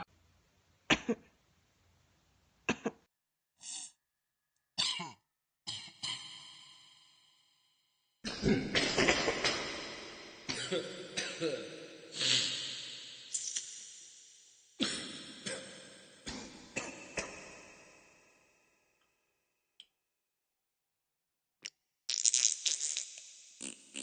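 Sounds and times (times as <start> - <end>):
person coughing: 0.9 - 1.2, 4.8 - 6.2, 8.3 - 9.8, 10.5 - 12.5, 14.8 - 15.7, 16.3 - 17.4.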